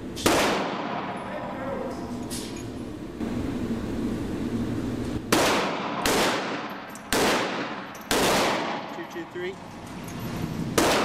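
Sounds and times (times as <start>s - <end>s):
gunshots with ringing tail: 0.2s - 1.2s, 5.3s - 9.0s, 10.8s - 11.0s.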